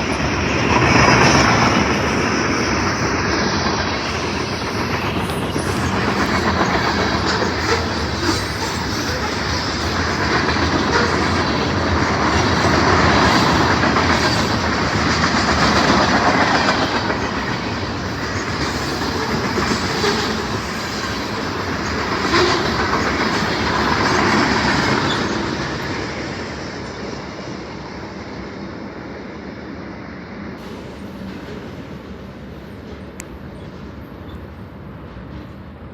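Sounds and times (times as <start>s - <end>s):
freight train wheels clacking: 0.0s - 27.6s.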